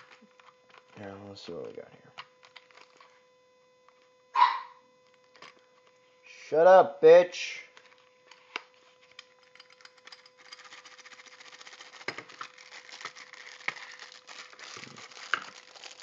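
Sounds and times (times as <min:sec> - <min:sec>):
packaging crinkling: 0:00.0 - 0:03.2, 0:05.0 - 0:06.0, 0:07.8 - 0:16.0.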